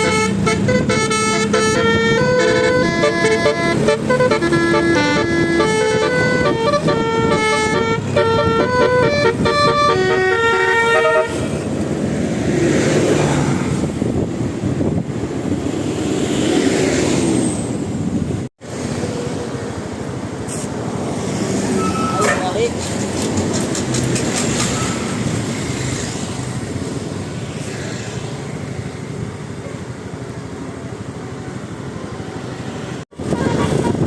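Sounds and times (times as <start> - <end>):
bus horn playing a melody: 0.0 - 11.6
vehicle and road noise: 0.0 - 34.0.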